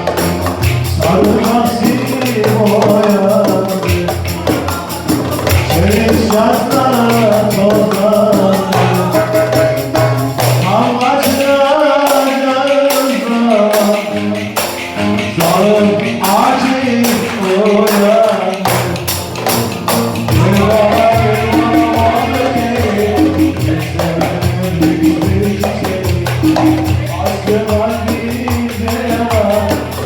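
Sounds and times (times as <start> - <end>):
fast percussion beat with jingles: 0.0 - 30.0
ornamented melody line: 12.5 - 30.0.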